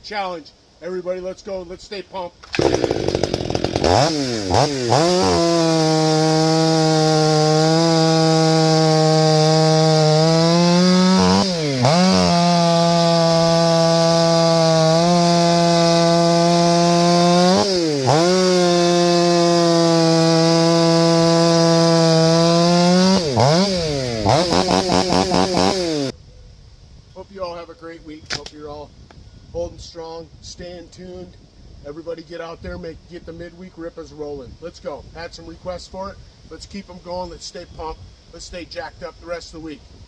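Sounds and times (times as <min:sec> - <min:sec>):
chainsaw revving: 0:02.5 - 0:26.1.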